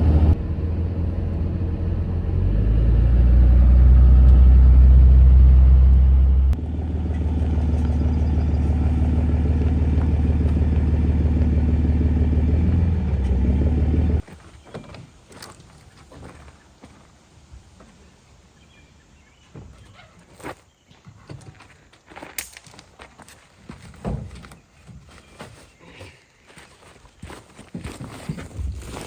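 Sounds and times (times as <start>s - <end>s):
truck engine and road rumble: 0.0s - 17.2s.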